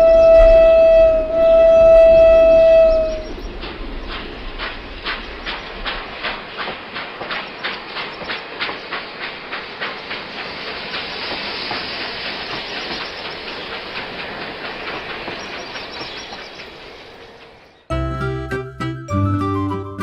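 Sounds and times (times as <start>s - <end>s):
train running hiss: 2.6s - 20.0s
train wheels clacking: 2.7s - 17.7s.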